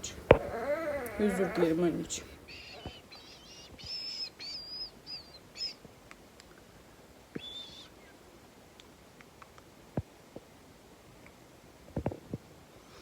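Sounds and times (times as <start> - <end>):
bird chirping: 0.0 - 5.9, 7.3 - 8.2.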